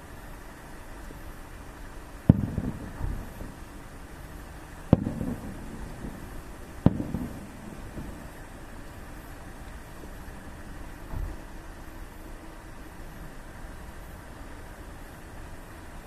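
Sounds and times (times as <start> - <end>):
steady low rumble: 0.0 - 16.0
firework shells bursting: 2.2 - 11.4.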